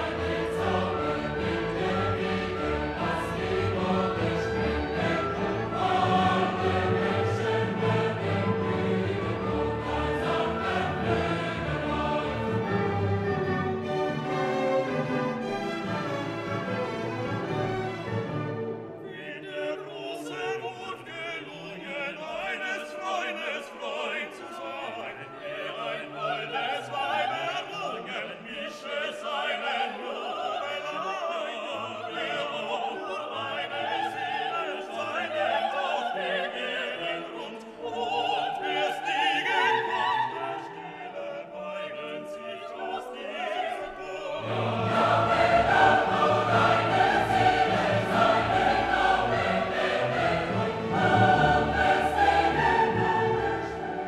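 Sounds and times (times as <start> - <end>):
orchestra playing: 0.0 - 19.4, 44.3 - 54.0
choir singing: 0.0 - 54.0.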